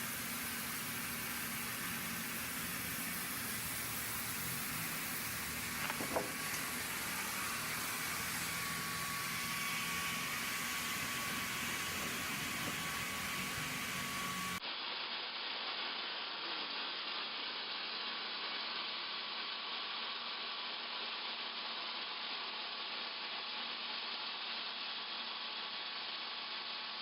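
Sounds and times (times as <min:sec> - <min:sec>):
sawmill machinery running: 0:00.0 - 0:14.6.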